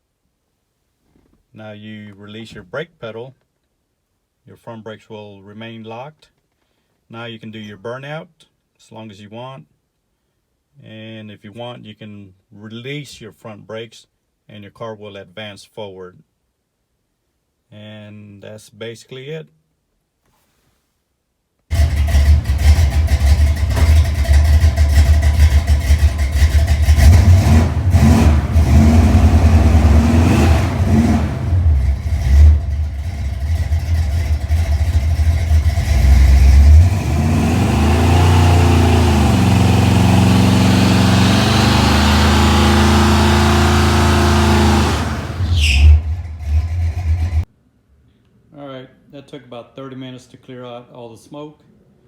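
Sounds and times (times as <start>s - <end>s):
car engine revving: 21.7s - 47.4s.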